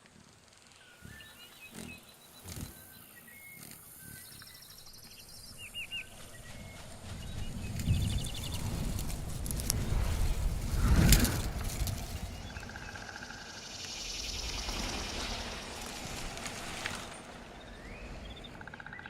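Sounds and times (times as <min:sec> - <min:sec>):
birds chirping and trilling: 0:00.7 - 0:09.6, 0:10.3 - 0:19.0.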